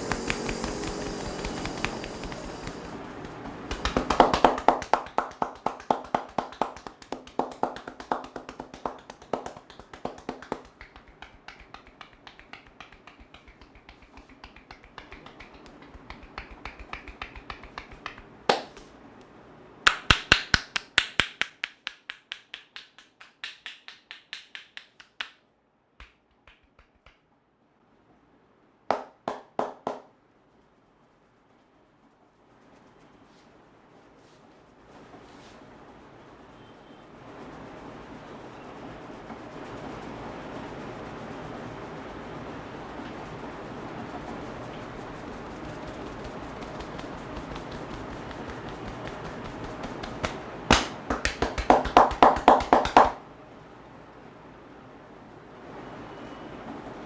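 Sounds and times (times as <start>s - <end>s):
hands slapping on head: 0.0s - 19.0s, 19.9s - 25.4s, 26.0s - 27.3s, 28.9s - 30.1s, 44.4s - 53.2s
loud smack: 50.0s - 53.2s.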